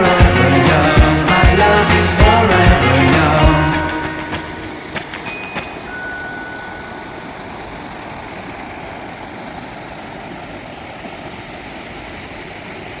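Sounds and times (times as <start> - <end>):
shallow stream flowing: 3.8 - 13.0.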